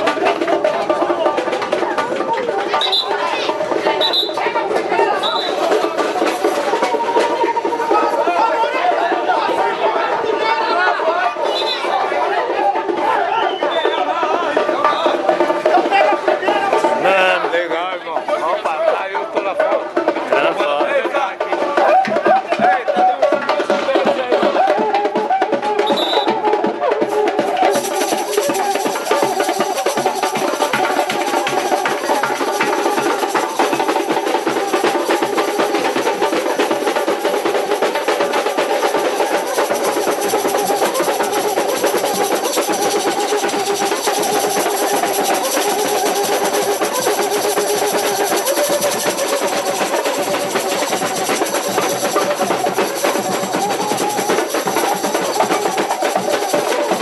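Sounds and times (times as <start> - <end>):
samba drums and percussion: 0.0 - 57.0.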